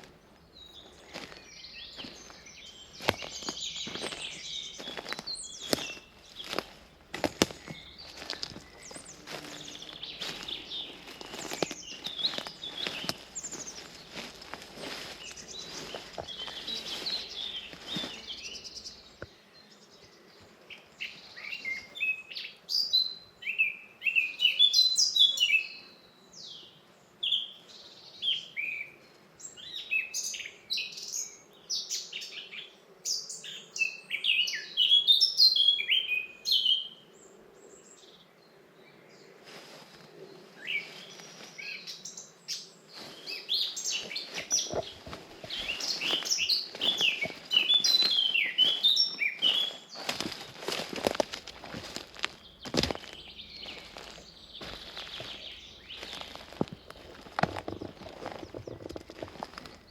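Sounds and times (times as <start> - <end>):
footsteps crunching on path: 0.0 - 19.3, 39.4 - 41.8, 42.9 - 59.9
songbird singing: 0.0 - 59.9.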